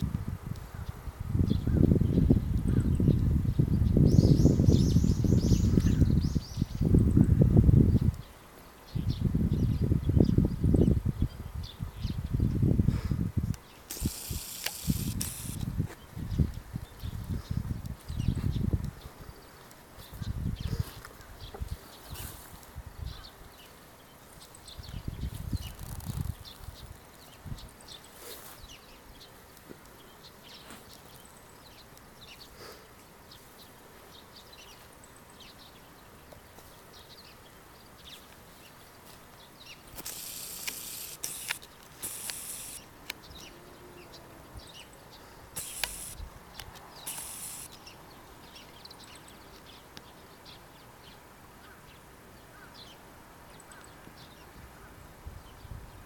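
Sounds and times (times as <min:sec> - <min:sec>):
faint chirps and ticks: 0:13.5 - 0:15.6, 0:39.4 - 0:43.5, 0:44.7 - 0:50.1.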